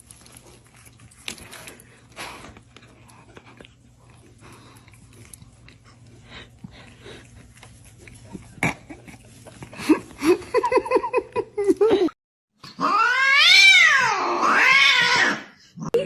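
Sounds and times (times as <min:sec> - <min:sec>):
cat yowling: 0:12.8 - 0:15.5.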